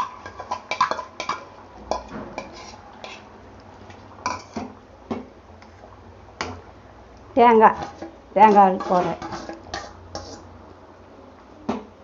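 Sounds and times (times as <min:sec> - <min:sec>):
spoon scraping cooking pot: 0:00.0 - 0:06.6, 0:07.6 - 0:10.5.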